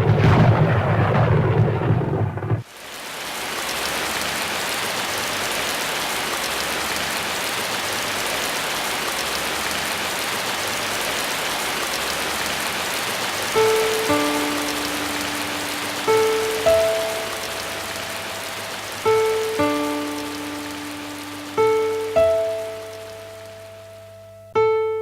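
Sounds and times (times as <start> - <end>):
deep rumble: 0.0 - 2.7
rain hiss: 2.6 - 24.5.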